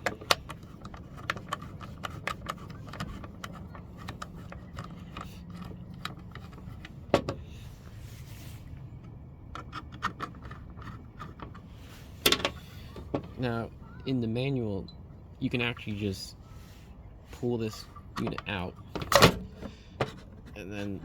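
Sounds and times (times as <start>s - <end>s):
screwdriver clicks and scrapes: 0.0s - 7.0s
steady low hum: 0.0s - 21.0s.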